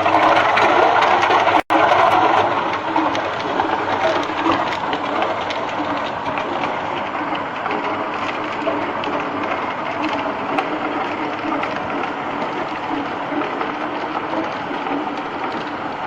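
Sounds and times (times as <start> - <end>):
ice machine droning: 0.0 - 16.0.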